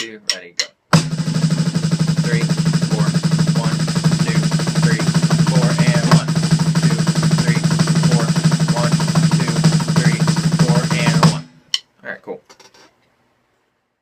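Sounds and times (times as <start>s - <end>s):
snare drum roll: 1.0s - 11.6s.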